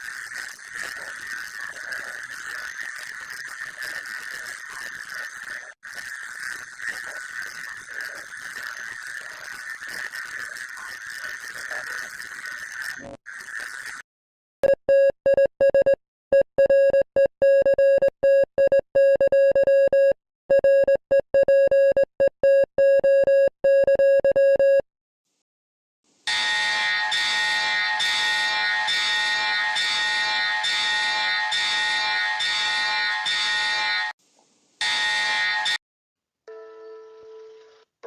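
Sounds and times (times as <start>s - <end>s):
buzzy beeping tone: 26.3s - 34.1s.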